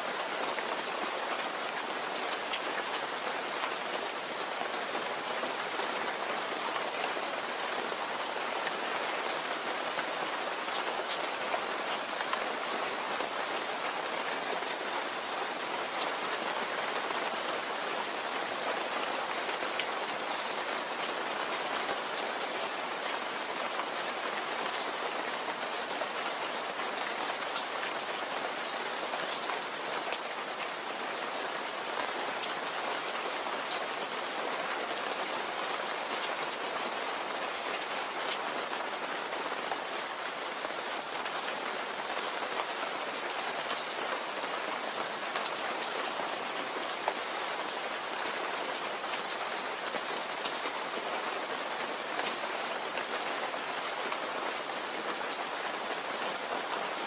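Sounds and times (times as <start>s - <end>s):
rain pattering on a surface: 0.0s - 57.0s.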